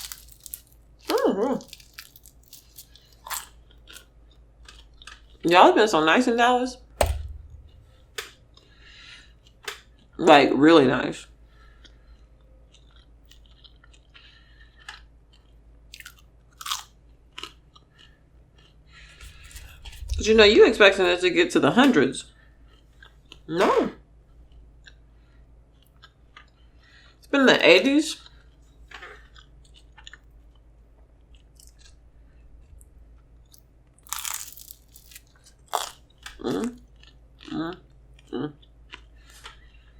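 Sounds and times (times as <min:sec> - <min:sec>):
crunchy bite: 0:00.0 - 0:04.1, 0:16.0 - 0:16.9, 0:33.5 - 0:36.4
person chewing and crunching food: 0:00.0 - 0:05.5, 0:11.6 - 0:20.3, 0:25.7 - 0:27.3, 0:28.2 - 0:39.9.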